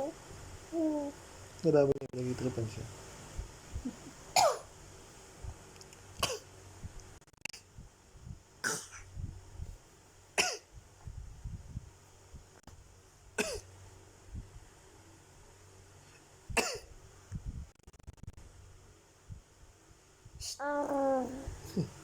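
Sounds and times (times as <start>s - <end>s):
sharp coughs: 4.4s - 4.7s, 8.6s - 9.0s, 10.4s - 10.7s, 13.4s - 13.6s, 16.6s - 16.9s.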